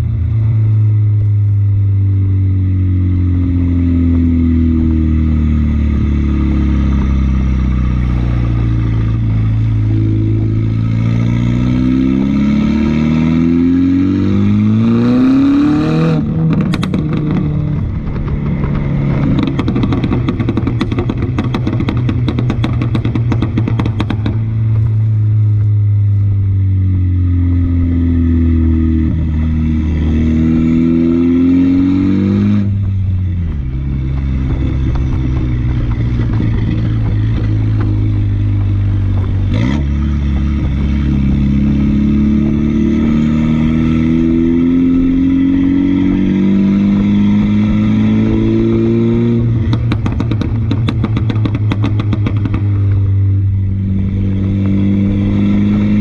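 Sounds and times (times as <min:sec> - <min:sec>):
car engine accelerating: 0:00.0 - 0:56.0
exhaust crackling pops: 0:16.2 - 0:26.3, 0:32.6 - 0:42.6, 0:49.3 - 0:55.3
gear change: 0:29.0 - 0:56.0.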